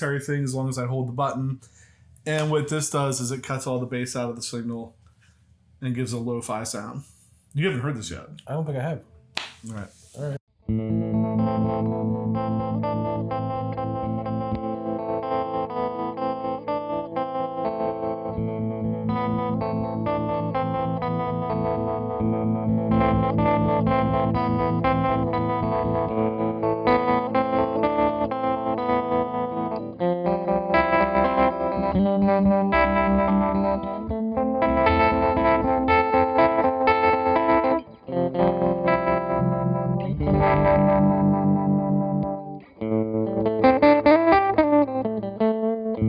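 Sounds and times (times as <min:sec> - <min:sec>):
electric guitar with tremolo: 0:10.6 - 0:46.0.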